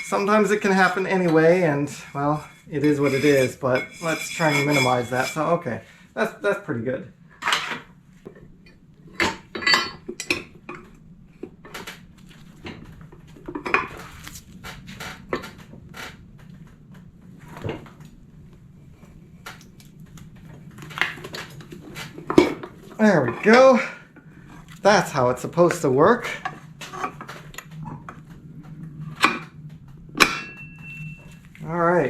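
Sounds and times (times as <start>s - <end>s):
metal tools clanking and rattling: 0.0s - 5.5s, 9.1s - 10.9s, 30.2s - 31.4s.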